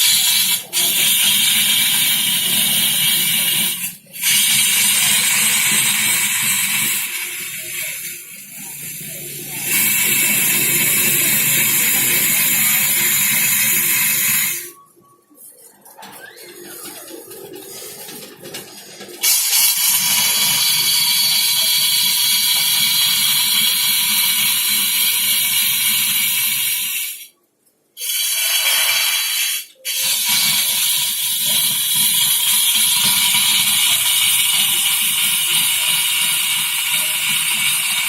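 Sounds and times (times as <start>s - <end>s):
wood lathe cutting wood: 0.0s - 8.1s, 8.9s - 14.7s, 19.2s - 27.0s, 28.0s - 38.0s.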